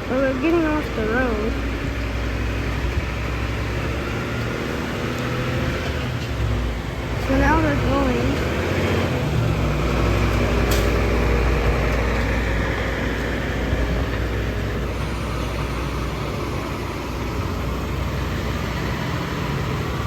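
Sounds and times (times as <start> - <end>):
truck engines rumbling: 0.0 - 20.0.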